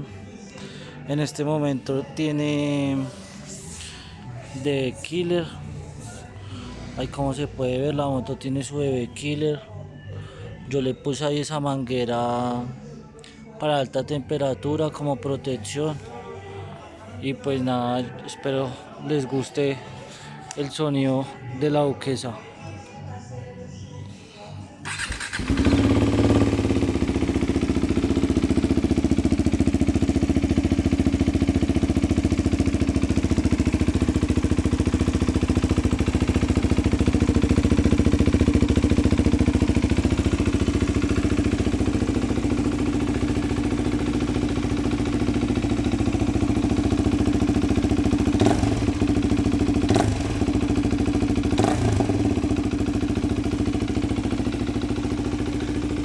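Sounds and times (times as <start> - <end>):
motorcycle engine idling: 24.8 - 56.0.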